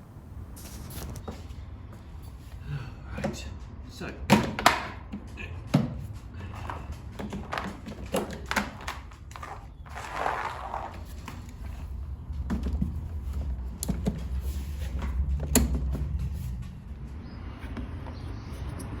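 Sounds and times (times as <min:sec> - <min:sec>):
equipment knocks and clicks: 0:04.2 - 0:09.6, 0:12.4 - 0:16.3.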